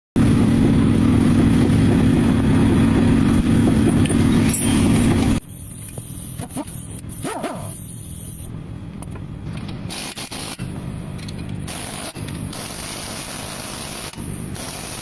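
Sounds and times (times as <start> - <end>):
car road rumble: 0.2 - 9.9.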